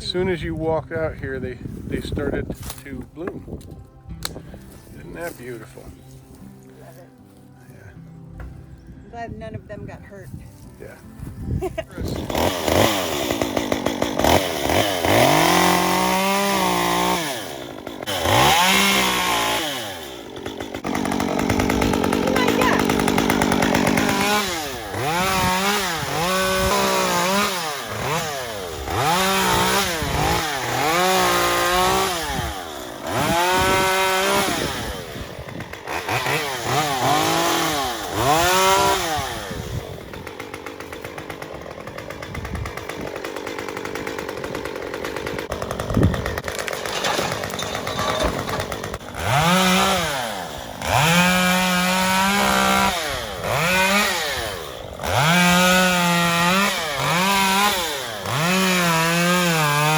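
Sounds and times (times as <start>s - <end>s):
chainsaw revving: 12.0s - 59.9s.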